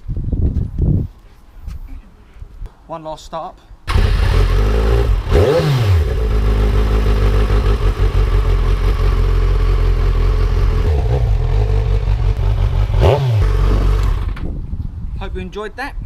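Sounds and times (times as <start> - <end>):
motorcycle engine revving and idling: 3.9 - 14.5.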